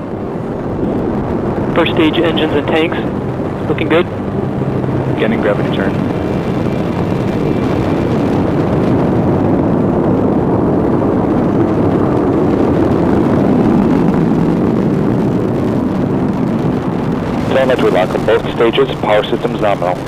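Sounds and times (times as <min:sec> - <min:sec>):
rocket engines rumbling: 0:00.0 - 0:20.0.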